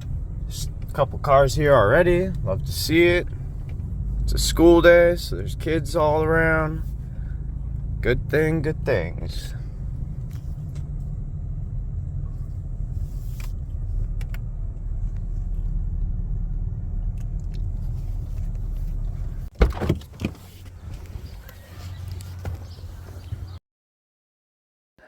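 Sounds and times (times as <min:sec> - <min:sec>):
car engine and tyre rumble: 0:00.0 - 0:23.6
sharp knocks and clunks: 0:19.5 - 0:21.1.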